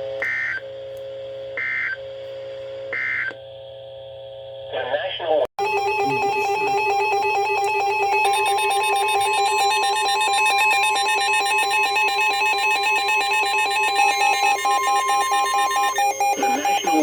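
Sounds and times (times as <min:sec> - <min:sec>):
pulsing electronic alarm: 0:00.2 - 0:00.6, 0:01.6 - 0:02.0, 0:05.6 - 0:17.0.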